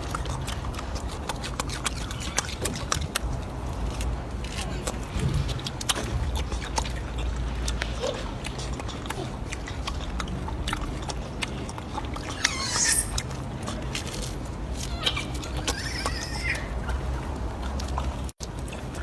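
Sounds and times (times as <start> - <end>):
monkey squealing: 12.2 - 13.3, 14.8 - 16.8.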